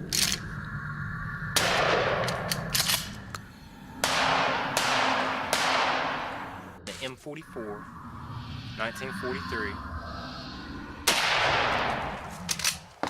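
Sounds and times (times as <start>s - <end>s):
gunshots with echo: 4.0s - 6.6s, 11.1s - 11.9s.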